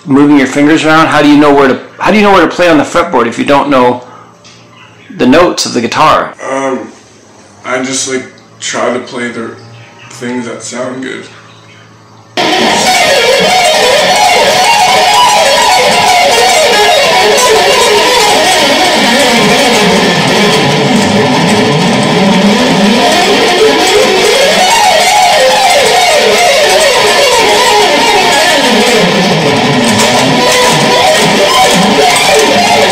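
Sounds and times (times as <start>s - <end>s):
fast electric guitar runs: 12.4s - 32.9s.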